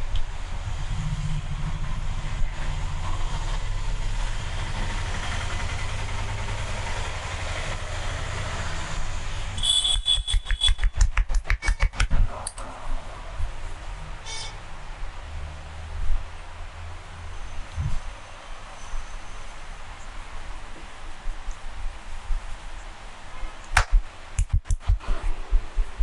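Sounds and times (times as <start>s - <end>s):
hand slaps: 10.0s - 12.2s, 23.7s - 25.1s
low rumble: 23.9s - 26.0s.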